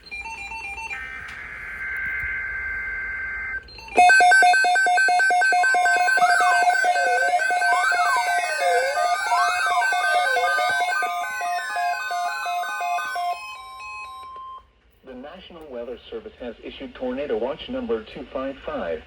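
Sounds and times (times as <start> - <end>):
pulsing two-tone alarm: 0.1 - 14.6
steady high electronic buzz: 0.9 - 14.6
sweeping electronic tones: 0.9 - 14.6.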